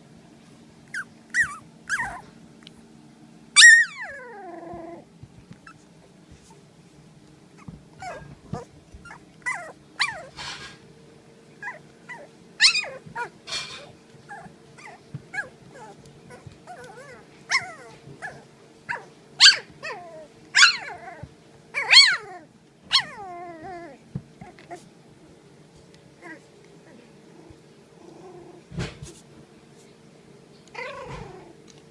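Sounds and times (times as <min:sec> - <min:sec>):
steady low hum: 0:00.0 - 0:31.9
puppies yipping and whining: 0:00.9 - 0:02.4, 0:03.6 - 0:06.5, 0:07.6 - 0:10.9, 0:11.6 - 0:24.9, 0:26.2 - 0:27.0, 0:30.7 - 0:31.6.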